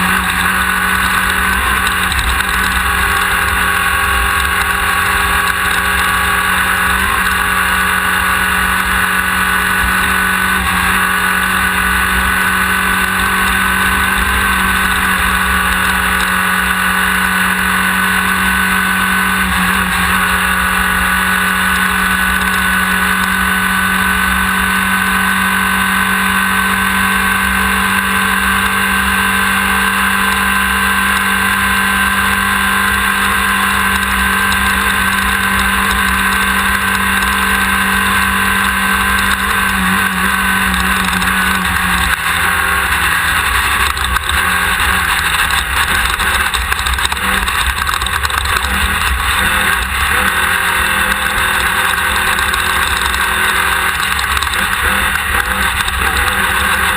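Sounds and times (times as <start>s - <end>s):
buggy engine at high revs: 0.0s - 56.9s
car rattling and knocking: 39.1s - 56.9s.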